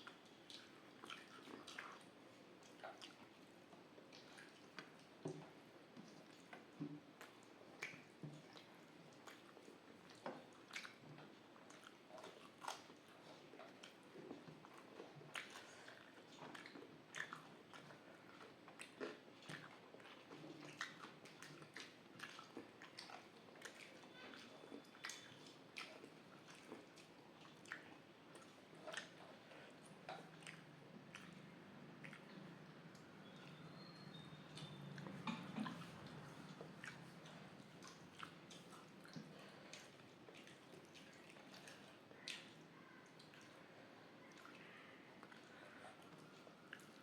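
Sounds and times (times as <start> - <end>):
person chewing food: 7.2 - 42.6, 45.2 - 47.0.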